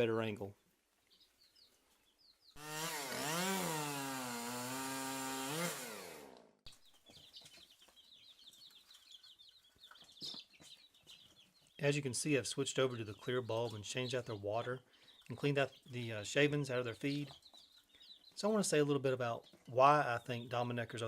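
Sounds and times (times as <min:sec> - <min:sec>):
baby chicks peeping: 0:00.0 - 0:03.6, 0:06.6 - 0:21.0
small engine droning: 0:02.6 - 0:06.6.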